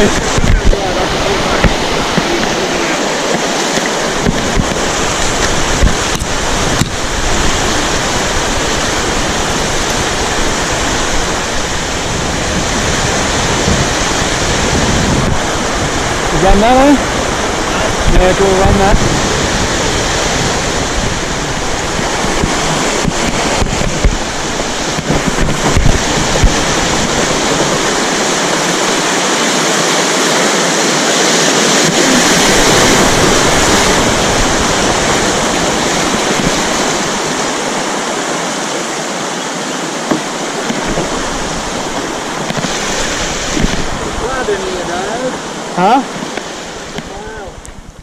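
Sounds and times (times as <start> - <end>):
rushing whitewater: 0.0 - 48.0
sharp knocks: 3.2 - 7.0, 22.0 - 29.0, 40.0 - 41.2.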